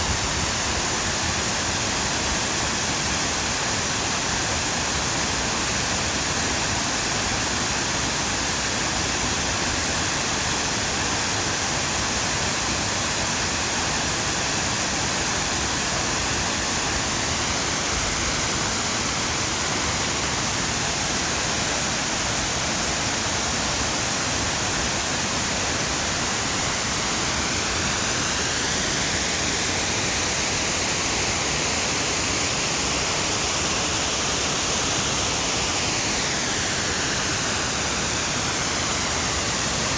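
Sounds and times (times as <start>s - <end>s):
waterfall rushing: 14.0s - 39.9s.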